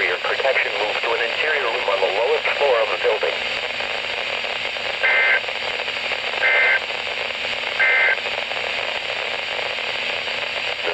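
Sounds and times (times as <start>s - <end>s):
radio static: 0.0s - 10.9s
two-tone data bursts: 5.0s - 5.4s, 6.4s - 6.8s, 7.8s - 8.2s.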